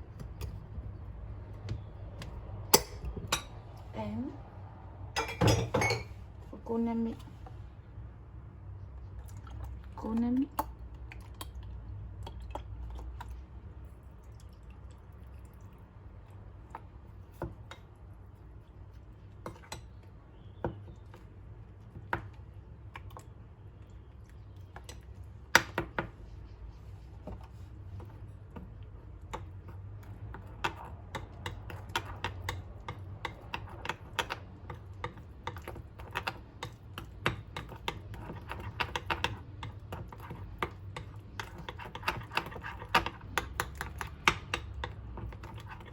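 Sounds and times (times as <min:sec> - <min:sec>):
spoon tapping against a bowl: 0:30.3 - 0:45.3.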